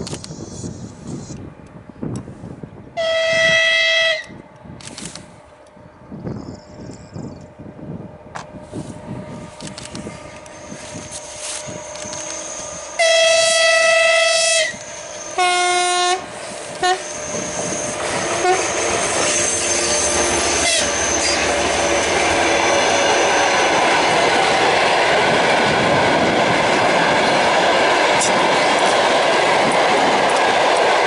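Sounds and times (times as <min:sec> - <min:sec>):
train running and wheel clatter: 0:00.0 - 0:31.0
locomotive horn blasts: 0:03.0 - 0:04.4, 0:12.2 - 0:23.4.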